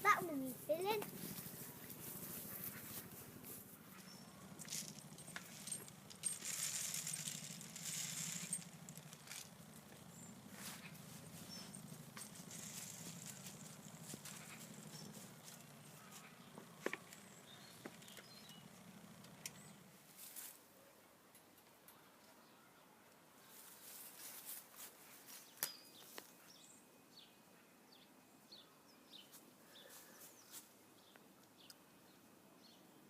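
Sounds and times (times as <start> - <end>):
steady low hum: 0.0 - 20.2
bird feeder rustling and clicking: 4.0 - 19.8.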